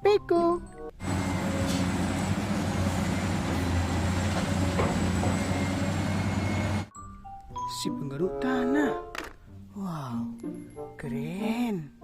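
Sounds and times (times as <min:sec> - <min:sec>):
machine rumble with hiss: 0:01.0 - 0:06.9.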